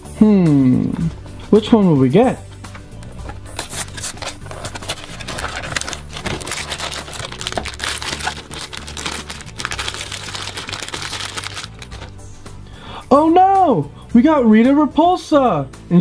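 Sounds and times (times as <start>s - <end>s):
packaging crinkling and rustling: 2.8s - 12.8s.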